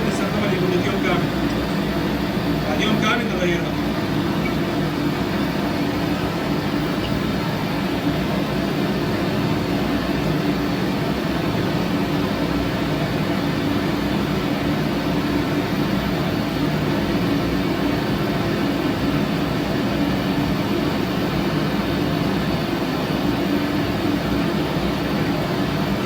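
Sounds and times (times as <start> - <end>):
machinery drone: 0.0 - 8.1.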